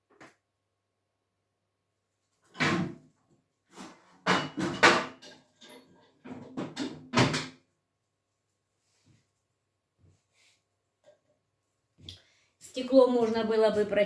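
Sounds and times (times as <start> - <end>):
clunks and knocks of wood stove: 4.2 - 7.6.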